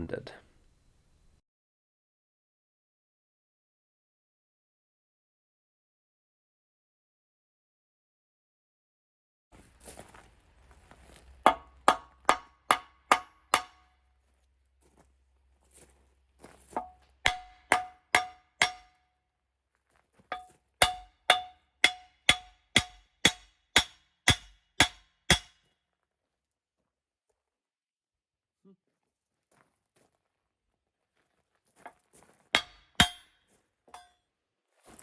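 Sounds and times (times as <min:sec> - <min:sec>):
hammer striking steel: 0:11.5 - 0:13.9, 0:16.8 - 0:19.0, 0:20.3 - 0:25.6, 0:32.6 - 0:33.4.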